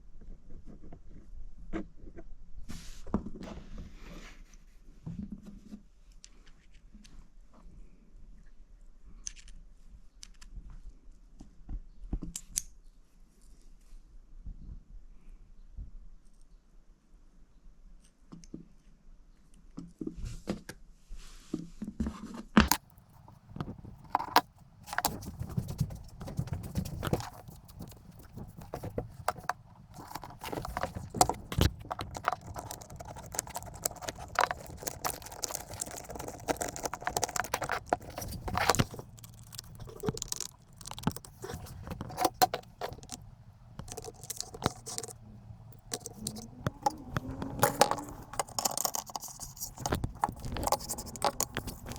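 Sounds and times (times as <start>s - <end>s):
metal parts and tools clinking: 22.7s - 43.2s, 43.8s - 51.9s.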